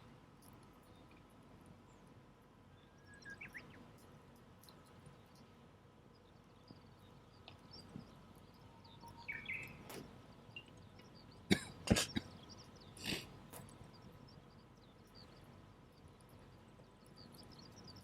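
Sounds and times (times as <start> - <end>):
bird chirping: 2.7 - 18.0
person coughing: 11.5 - 12.4.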